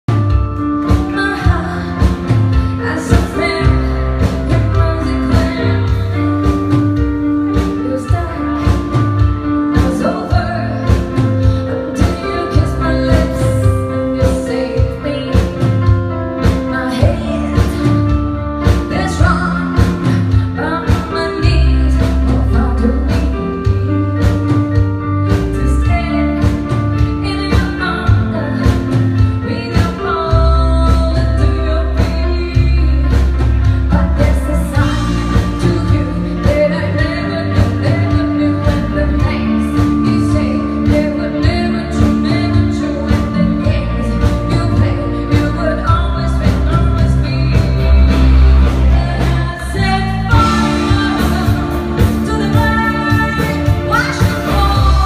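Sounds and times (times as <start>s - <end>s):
instrumental backing with beat: 0.1s - 55.0s.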